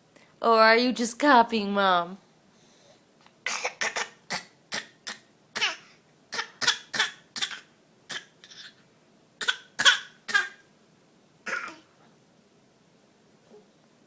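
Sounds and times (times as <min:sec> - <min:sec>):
baby fake coughing: 0:03.4 - 0:08.8, 0:09.4 - 0:10.7, 0:11.4 - 0:11.9.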